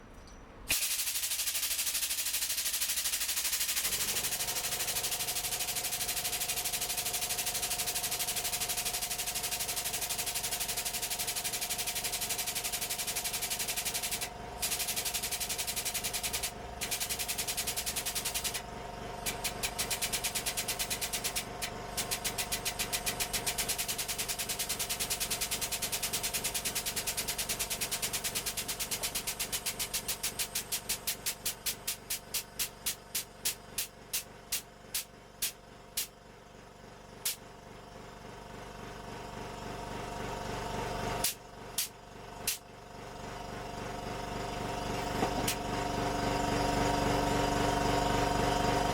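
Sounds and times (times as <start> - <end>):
hiss: 0.7 - 4.3
hydraulic press whine: 44.5 - 48.9.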